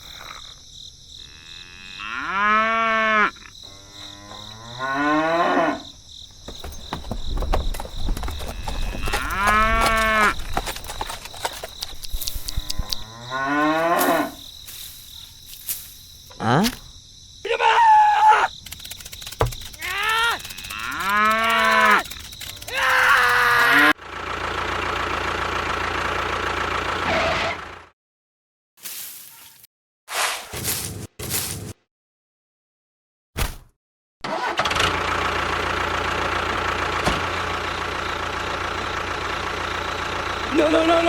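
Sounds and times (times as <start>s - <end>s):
cattle mooing: 1.2s - 5.9s, 8.5s - 10.4s, 12.6s - 14.4s, 19.9s - 22.0s, 23.2s - 23.9s.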